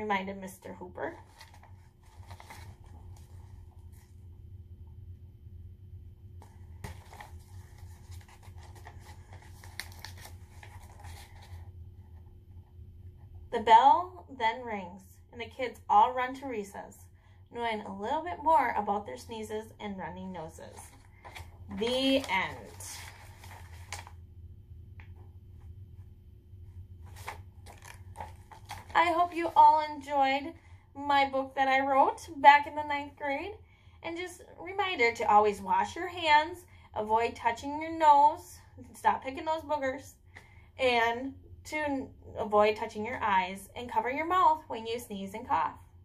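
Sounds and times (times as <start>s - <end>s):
steady low hum: 0.0s - 46.0s
paper rustling and crinkling: 1.1s - 4.2s, 6.4s - 11.7s, 20.7s - 24.2s, 27.0s - 29.7s.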